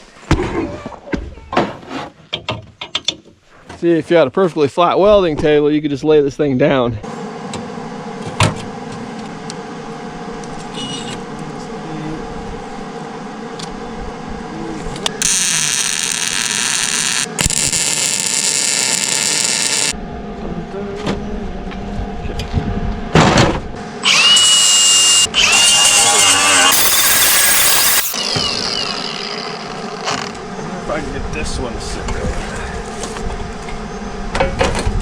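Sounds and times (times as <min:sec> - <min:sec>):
loud noise with high whine: 0:07.1 - 0:35.0
arc welding hiss: 0:15.2 - 0:20.0, 0:26.7 - 0:28.2.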